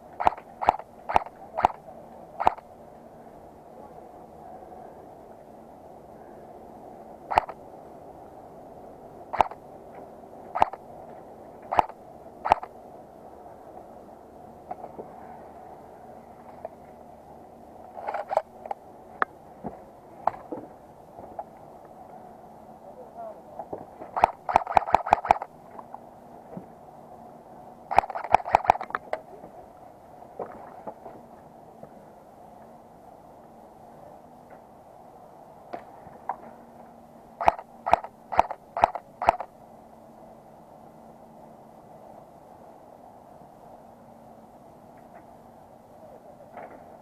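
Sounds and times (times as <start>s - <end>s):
airsoft gun shots: 0.2s - 1.8s, 9.4s - 9.6s, 24.2s - 25.5s, 27.9s - 28.8s, 37.4s - 39.5s.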